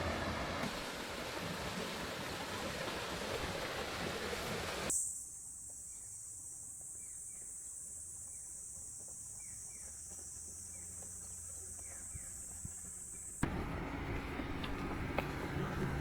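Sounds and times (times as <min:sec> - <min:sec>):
outdoor ambience: 0:00.0 - 0:16.0
insect drone: 0:04.7 - 0:16.0.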